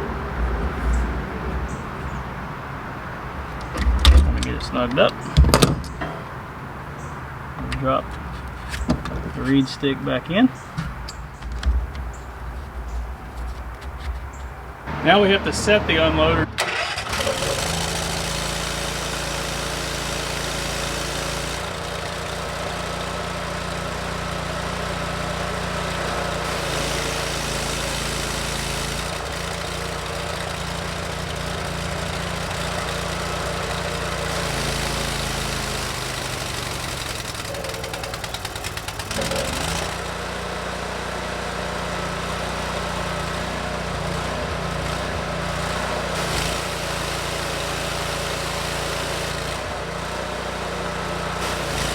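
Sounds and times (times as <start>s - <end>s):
pressure washer engine and pump humming: 0.0s - 51.9s
brief rattle: 3.4s - 14.8s, 36.2s - 40.1s.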